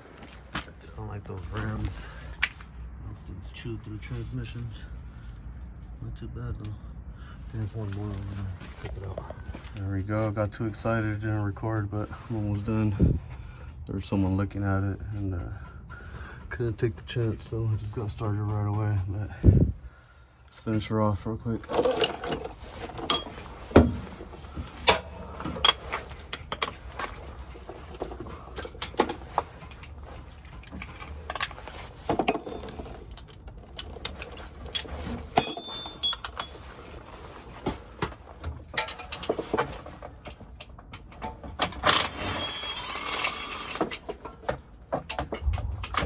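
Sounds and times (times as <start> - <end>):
hand tools clinking on metal: 21.6 - 36.8
high metallic ring: 35.4 - 36.6.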